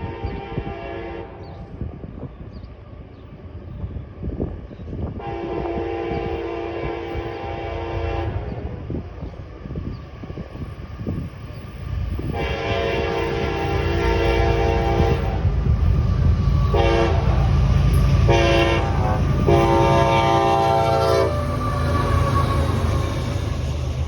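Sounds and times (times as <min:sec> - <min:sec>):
locomotive air horn blasts: 0:00.0 - 0:01.4, 0:05.2 - 0:08.8, 0:12.2 - 0:15.5, 0:16.7 - 0:23.6
locomotive rumble: 0:00.0 - 0:24.0.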